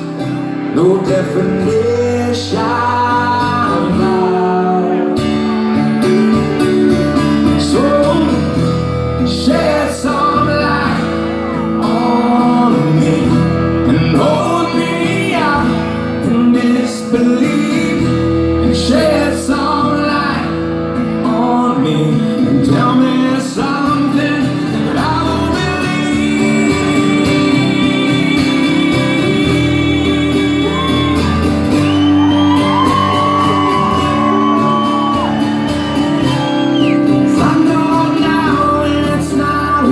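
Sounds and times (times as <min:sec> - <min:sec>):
guitar accompaniment: 0:00.0 - 0:39.9
man singing rock song: 0:00.0 - 0:39.9.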